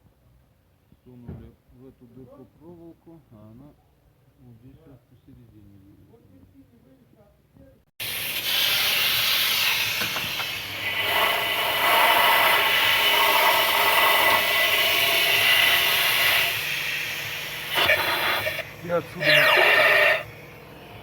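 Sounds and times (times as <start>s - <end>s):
compressed air hissing from blow gun: 8.0s - 20.6s.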